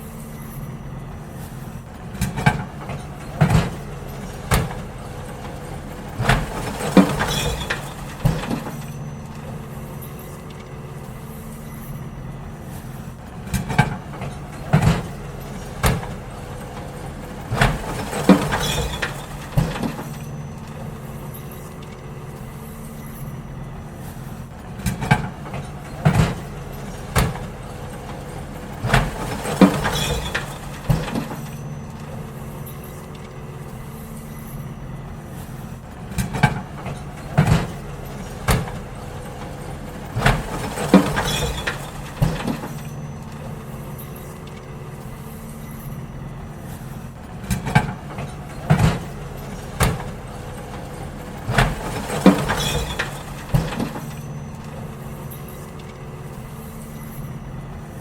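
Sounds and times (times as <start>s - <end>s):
bins banging and clattering: 0.0s - 58.0s
garbage truck engine running: 0.0s - 58.0s.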